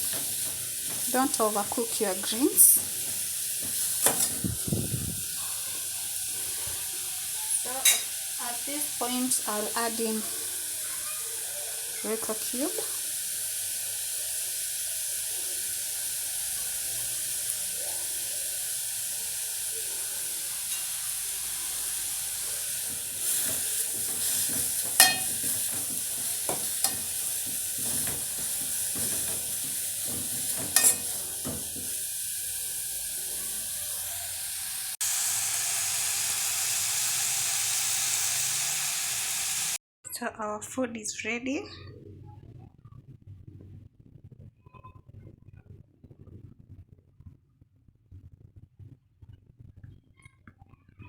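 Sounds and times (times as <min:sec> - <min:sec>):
spoon scraping a pan: 0:00.0 - 0:04.6, 0:07.5 - 0:08.2, 0:20.6 - 0:32.9
greens sizzling in a pan: 0:00.0 - 0:39.8.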